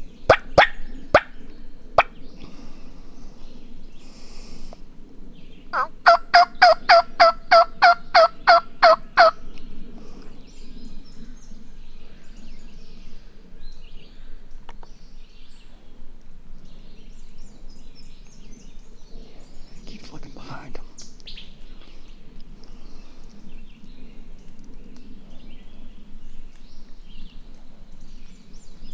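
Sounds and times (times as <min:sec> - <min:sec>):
turkey yelping: 0:00.3 - 0:01.3, 0:05.8 - 0:09.4.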